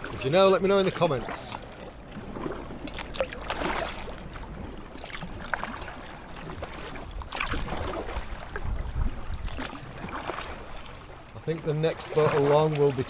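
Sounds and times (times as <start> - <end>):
paddle splashing in water: 0.0 - 13.0.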